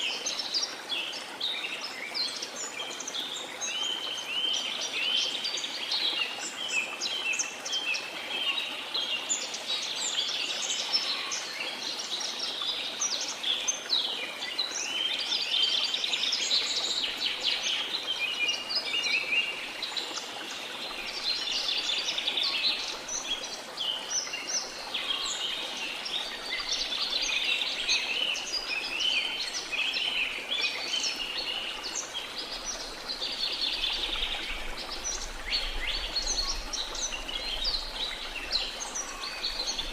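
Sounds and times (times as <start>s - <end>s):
songbirds chirping and twittering: 0.0s - 39.9s.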